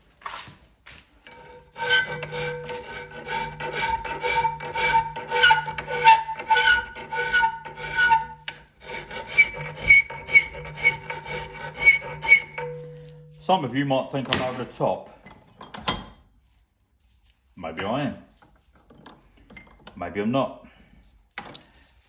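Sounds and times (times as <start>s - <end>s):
file rasping on steel: 1.3s - 13.4s
steady ringing tone: 9.3s - 13.4s.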